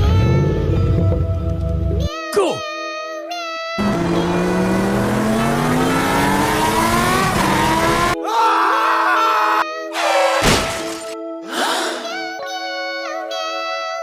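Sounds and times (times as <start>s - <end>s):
background music: 0.0s - 14.0s
racing car engine revving: 3.8s - 8.2s.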